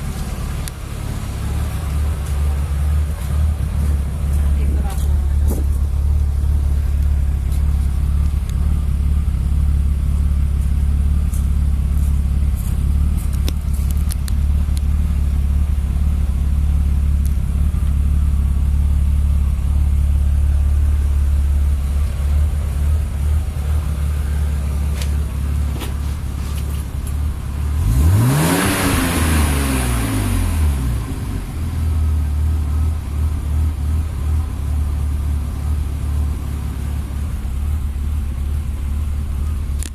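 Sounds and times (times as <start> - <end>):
car engine idling: 0.0 - 39.9
engine revving: 21.8 - 34.8.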